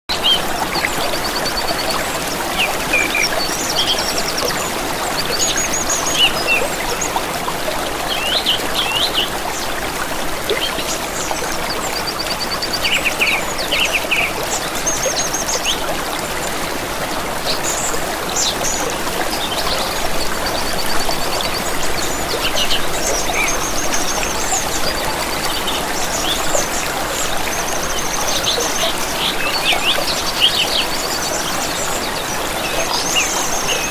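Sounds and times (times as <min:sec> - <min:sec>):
stream trickling: 0:00.1 - 0:33.9.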